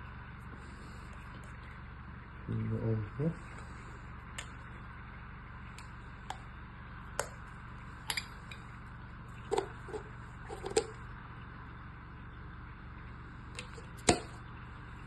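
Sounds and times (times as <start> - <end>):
low hum: 0.0 - 15.0
objects clicking and knocking: 9.5 - 11.0.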